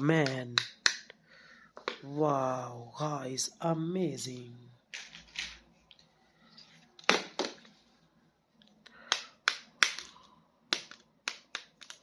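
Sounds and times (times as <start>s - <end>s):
plastic packaging clicks and crackles: 9.2s - 12.0s.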